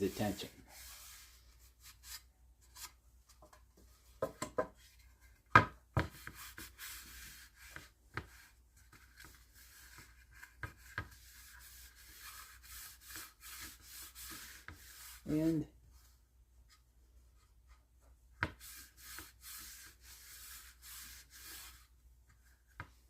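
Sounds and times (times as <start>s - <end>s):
wipe rubbing over wood: 0.0s - 2.2s, 9.5s - 15.6s, 18.6s - 21.9s.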